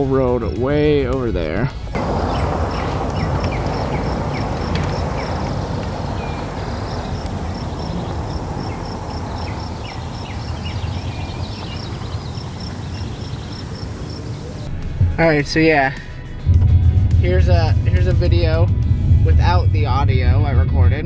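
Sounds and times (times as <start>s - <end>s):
birds chirping: 2.0s - 14.7s
low rumbling noise: 2.0s - 14.7s.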